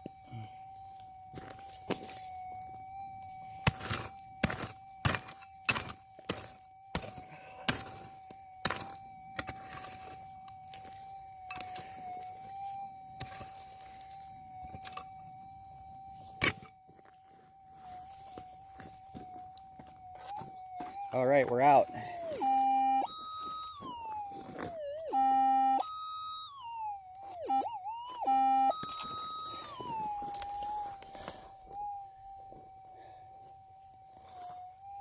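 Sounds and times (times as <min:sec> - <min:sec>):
metal detector high hum: 0:00.0 - 0:16.7, 0:17.4 - 0:35.0
digging tool striking rocky ground: 0:03.6 - 0:12.5, 0:13.2 - 0:15.3, 0:16.3 - 0:16.8.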